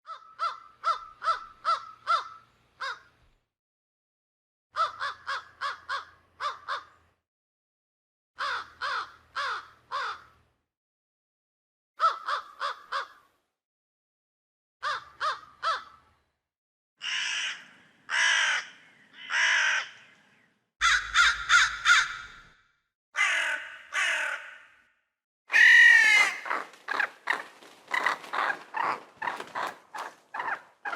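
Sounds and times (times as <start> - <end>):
crows cawing: 0.1 - 3.2, 4.8 - 7.0, 8.4 - 10.4, 12.0 - 13.2, 14.8 - 16.1, 17.0 - 20.2, 20.8 - 22.6, 23.2 - 24.9, 25.5 - 30.9.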